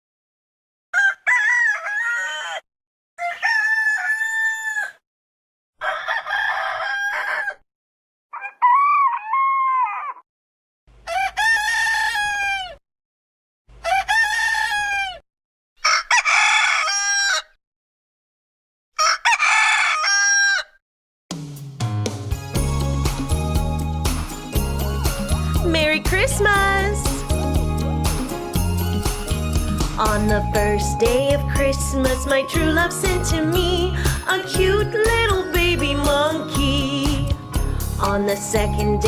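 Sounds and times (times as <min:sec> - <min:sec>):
rooster crowing: 0:00.9 - 0:05.0, 0:05.8 - 0:07.6, 0:08.3 - 0:10.2, 0:15.8 - 0:17.6, 0:19.0 - 0:20.8.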